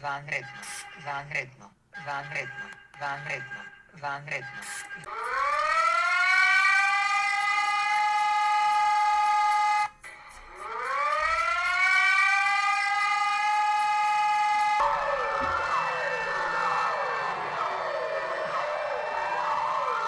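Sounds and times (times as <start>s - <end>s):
overlapping sirens wailing: 4.6s - 20.0s
siren winding up: 5.1s - 20.0s.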